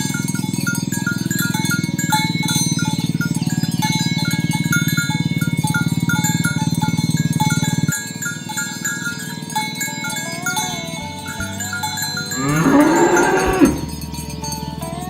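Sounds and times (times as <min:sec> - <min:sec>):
cow mooing: 0:12.3 - 0:14.0.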